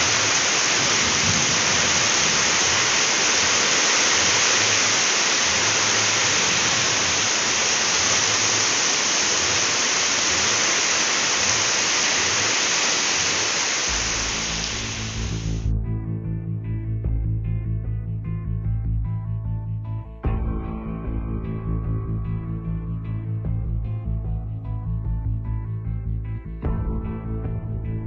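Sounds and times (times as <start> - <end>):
heavy rain pouring: 0.0 - 15.7
music: 13.9 - 28.0.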